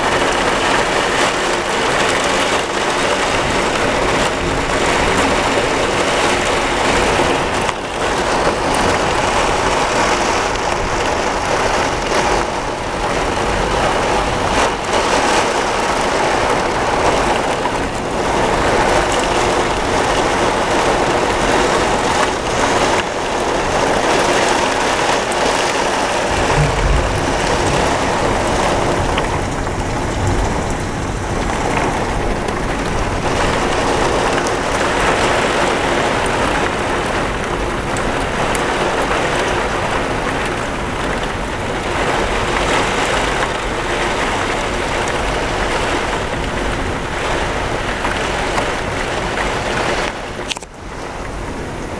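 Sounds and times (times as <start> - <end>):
heavy rain pouring: 0.0 - 51.9
low thunder rumble: 23.6 - 41.0.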